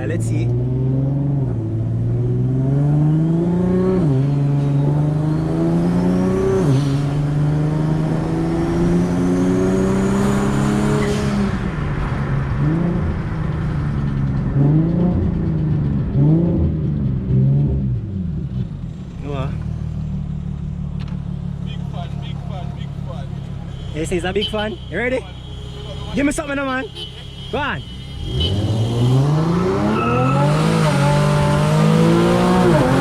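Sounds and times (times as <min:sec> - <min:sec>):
car engine accelerating hard: 0:00.0 - 0:23.8, 0:28.2 - 0:33.0
engine blipping: 0:19.0 - 0:33.0.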